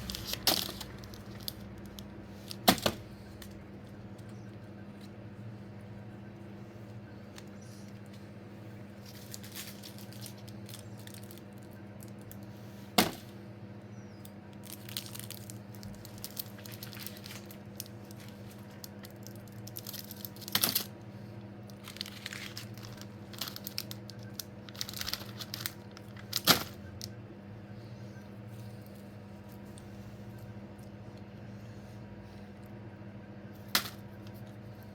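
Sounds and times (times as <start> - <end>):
candy wrappers crinkling: 0.0 - 4.0, 8.9 - 12.5, 14.4 - 21.0, 21.6 - 27.1
steady low hum: 0.0 - 34.9.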